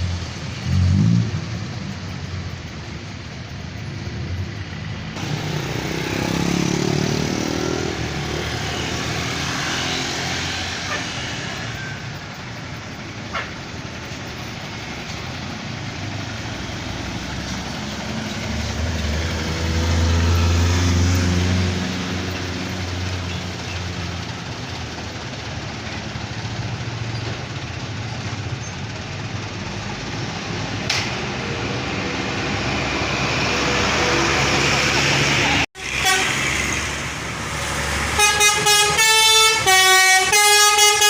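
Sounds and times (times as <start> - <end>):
heavy vehicle engine drone: 0.0 - 41.0
road traffic passing: 0.0 - 41.0
sharp click: 30.9 - 31.2.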